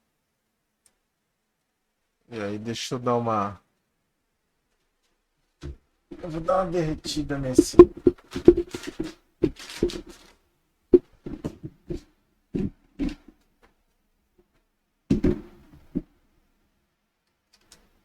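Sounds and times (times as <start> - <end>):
tools knocking on workbench: 7.0 - 10.1.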